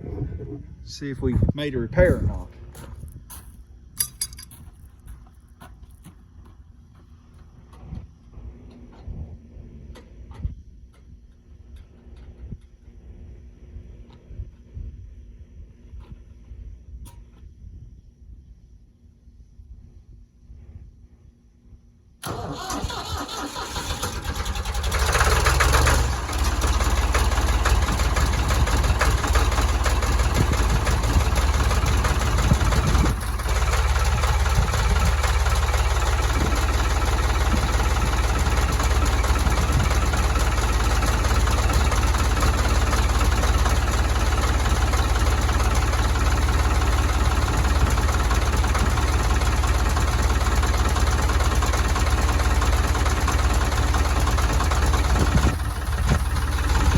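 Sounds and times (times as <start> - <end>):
tractor diesel engine starting: 22.2 - 56.9.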